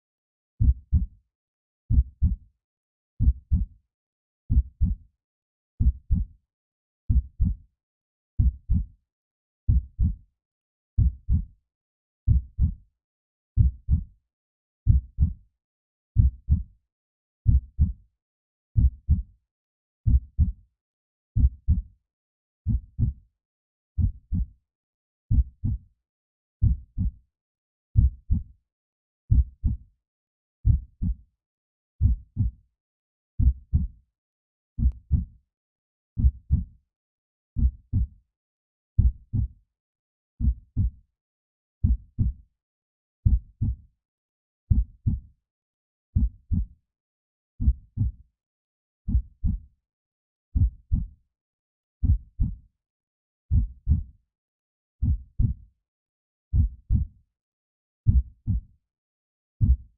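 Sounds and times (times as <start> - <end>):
heartbeat double thumps: 3.2 - 3.7, 4.5 - 5.0, 7.1 - 7.6, 12.3 - 12.8, 13.6 - 14.0, 14.9 - 15.3, 16.2 - 16.6, 22.7 - 23.1, 26.6 - 27.1, 29.3 - 29.8, 33.4 - 33.9, 36.2 - 36.6, 37.6 - 38.1, 39.0 - 39.5, 41.8 - 42.4, 46.2 - 46.6, 47.6 - 48.1, 52.0 - 52.5, 53.5 - 54.0, 55.0 - 55.5, 56.5 - 57.0, 58.1 - 58.6, 59.6 - 59.9
heartbeat thumps: 12.3 - 12.7, 16.2 - 16.6, 39.0 - 39.4, 47.6 - 48.1, 53.5 - 54.0, 55.0 - 55.5, 56.6 - 57.0, 58.1 - 58.6.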